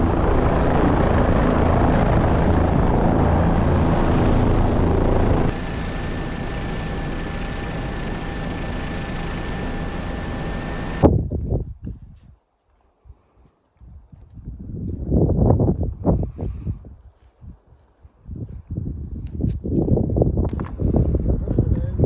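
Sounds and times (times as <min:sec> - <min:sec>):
helicopter rotor and engine: 0:00.0 - 0:11.1
high whine: 0:00.0 - 0:11.1.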